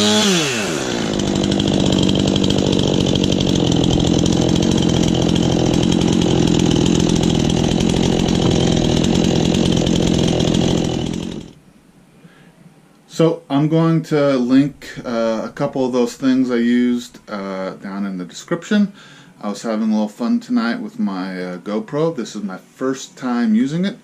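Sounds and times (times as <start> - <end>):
chainsaw engine idling: 0.0 - 11.6.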